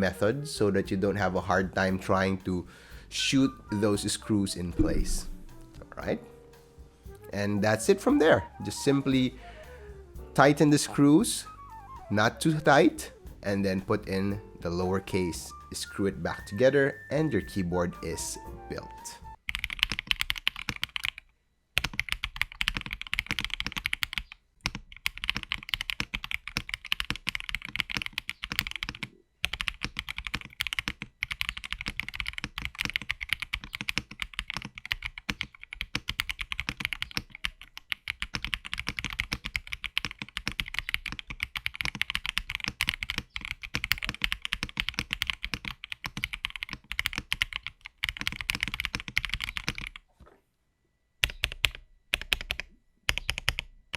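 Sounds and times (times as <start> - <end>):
mechanical keyboard typing: 19.4 - 21.2, 21.8 - 50.0, 51.2 - 53.9.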